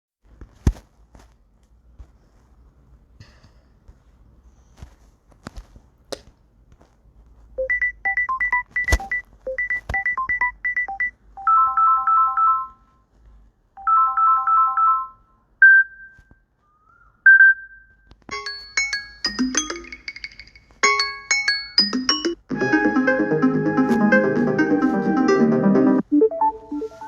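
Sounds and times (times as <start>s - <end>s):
short electronic beeps: 7.6s - 11.1s
three-note ringtone pattern: 18.3s - 27.0s.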